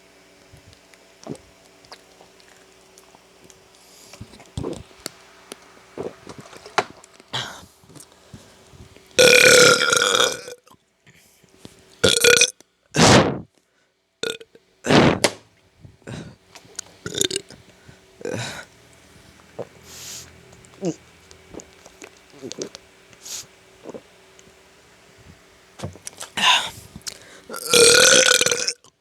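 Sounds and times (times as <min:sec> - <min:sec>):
person burping: 0:09.2 - 0:10.7, 0:12.0 - 0:13.4, 0:14.2 - 0:15.3, 0:17.1 - 0:17.5, 0:18.2 - 0:18.7, 0:27.5 - 0:28.8.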